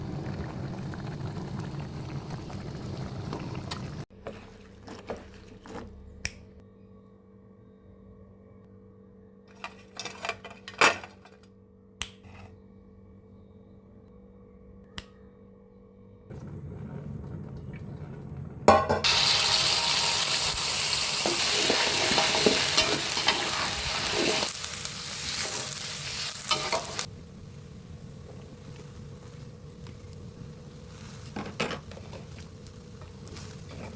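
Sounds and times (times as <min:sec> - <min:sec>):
food sizzling in hot oil: 0:18.7 - 0:33.9.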